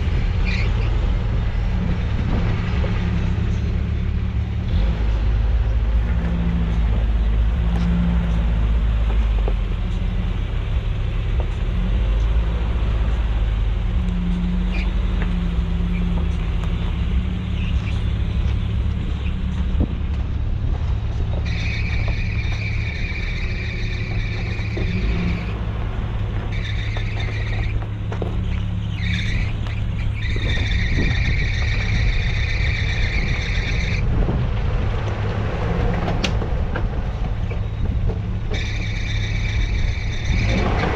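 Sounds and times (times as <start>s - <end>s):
high steady squeal: 0.0s - 4.6s, 21.2s - 34.2s, 37.1s - 40.9s
truck engine low rumble: 0.0s - 40.9s.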